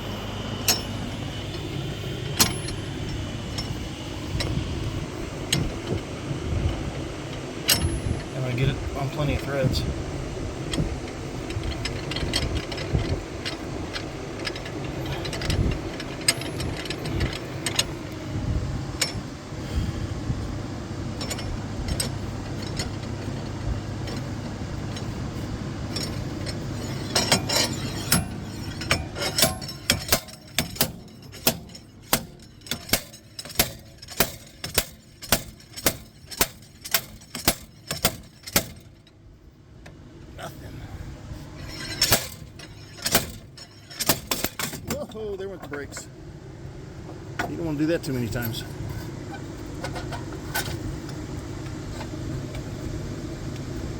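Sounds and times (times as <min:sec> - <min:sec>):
low steady hum: 0:00.0 - 0:53.9
sharp metal strikes: 0:02.3 - 0:03.8, 0:07.7 - 0:08.4, 0:26.0 - 0:38.9, 0:41.7 - 0:45.3
slide hammer rattling and clicking: 0:25.9 - 0:39.1.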